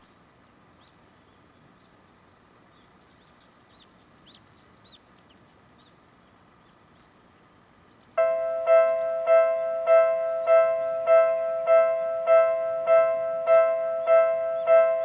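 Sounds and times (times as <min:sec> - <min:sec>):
quiet outdoor background noise: 0:00.0 - 0:15.0
bird chirping: 0:06.6 - 0:11.2, 0:12.3 - 0:15.0.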